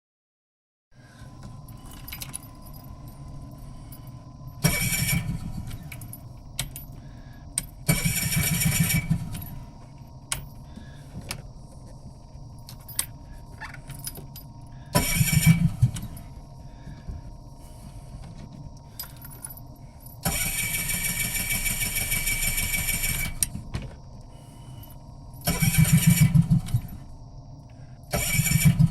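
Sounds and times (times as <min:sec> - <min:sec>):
keys jangling in ignition: 0:01.5 - 0:07.0, 0:12.5 - 0:16.4, 0:18.8 - 0:20.9, 0:25.4 - 0:27.1
car engine cranking: 0:04.6 - 0:06.1, 0:07.8 - 0:09.5, 0:15.0 - 0:16.2, 0:20.2 - 0:23.5, 0:25.4 - 0:27.0, 0:28.1 - 0:28.9.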